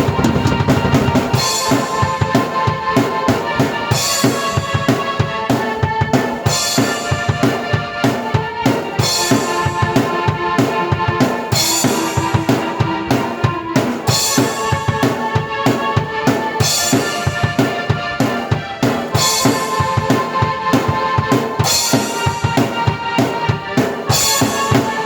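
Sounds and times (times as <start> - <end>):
cymbal crashes: 0.0 - 2.7
drum kit beat: 0.0 - 25.0
keyboard chords and melody: 0.0 - 25.0.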